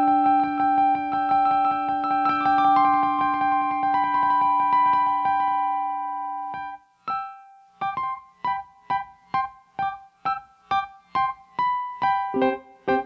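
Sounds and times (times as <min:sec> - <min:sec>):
piano playing high notes: 0:12.2 - 0:13.0.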